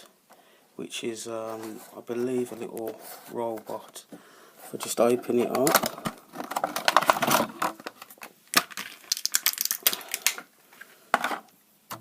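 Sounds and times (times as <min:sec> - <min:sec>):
plastic packaging clicks and crinkles: 0:05.3 - 0:12.0.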